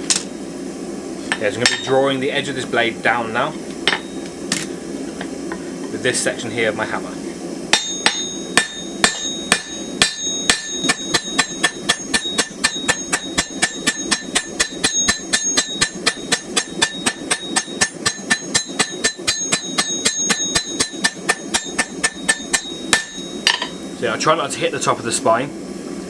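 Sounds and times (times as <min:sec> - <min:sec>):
hammer striking steel on anvil: 0:01.3 - 0:02.0, 0:03.9 - 0:04.3, 0:07.7 - 0:24.0.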